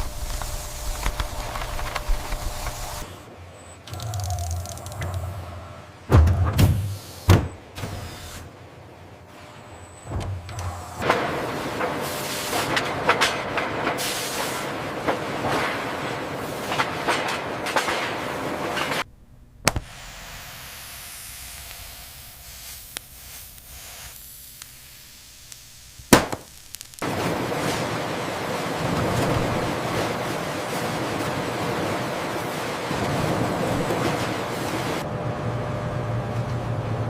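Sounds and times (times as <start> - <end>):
quiet hum: 18.9 - 27.0
sharp clicks: 19.7 - 19.9.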